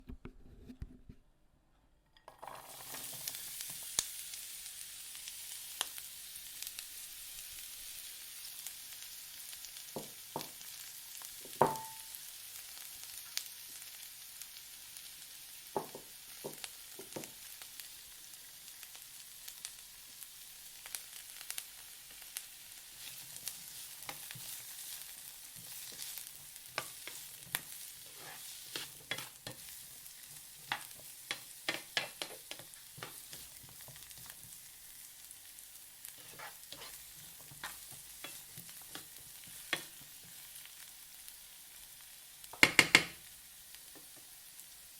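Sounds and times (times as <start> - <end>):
food sizzling in hot oil: 2.3 - 44.9
sharp knock with ring: 11.6 - 12.1.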